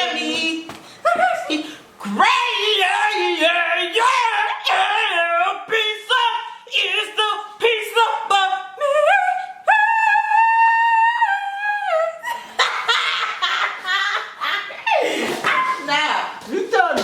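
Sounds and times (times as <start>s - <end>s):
person singing unaccompanied: 0.0s - 12.2s
noisy vocal sounds: 0.0s - 13.0s.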